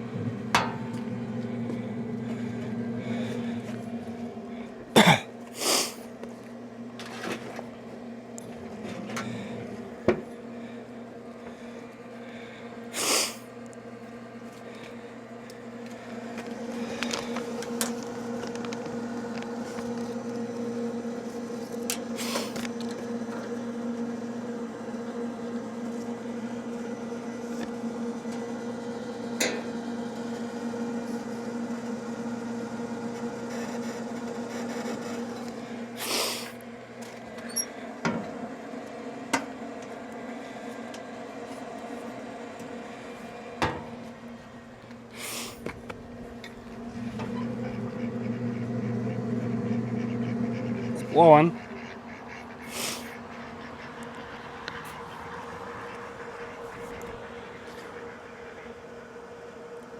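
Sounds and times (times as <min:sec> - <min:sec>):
small electric motor hum: 0:05.5 - 0:59.9.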